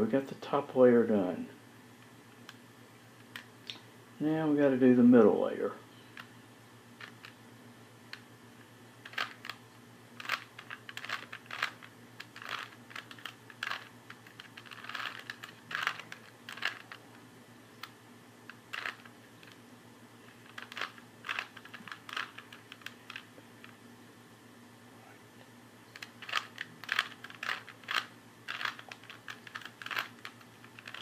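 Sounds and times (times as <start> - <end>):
puzzle cube layers clicking: 10.2 - 17.0, 26.0 - 31.0.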